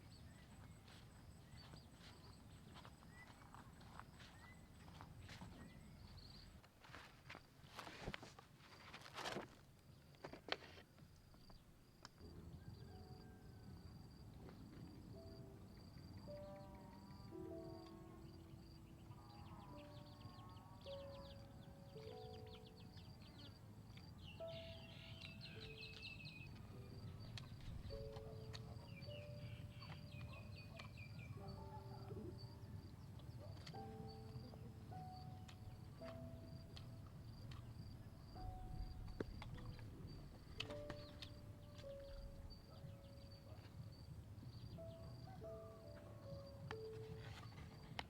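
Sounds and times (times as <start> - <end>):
insects chirping: 0.0 - 48.0
background music of held notes: 12.3 - 48.0.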